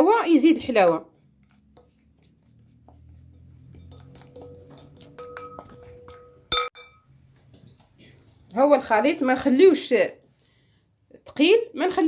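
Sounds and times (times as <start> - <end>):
spoon stirring in a bowl: 0.0 - 9.6
spoon clinking against bowl: 3.7 - 7.0.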